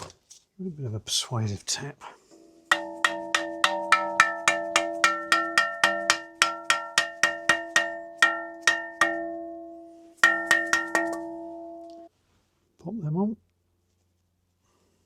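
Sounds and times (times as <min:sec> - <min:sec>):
metal ringing like a bell: 0:02.4 - 0:12.1
hammer tapping on metal: 0:02.7 - 0:12.1.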